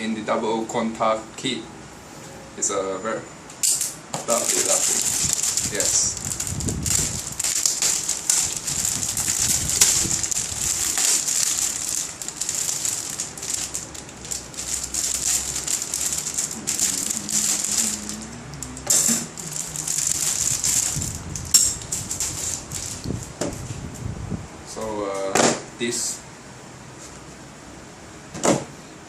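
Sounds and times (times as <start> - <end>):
plastic bags crinkling: 3.7 - 23.7.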